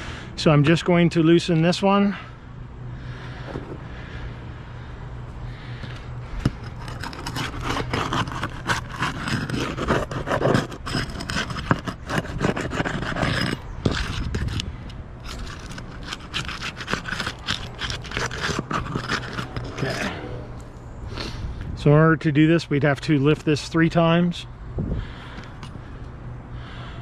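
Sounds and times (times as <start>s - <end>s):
shingle scraping and rubbing: 3.2s - 4.2s, 5.6s - 20.3s.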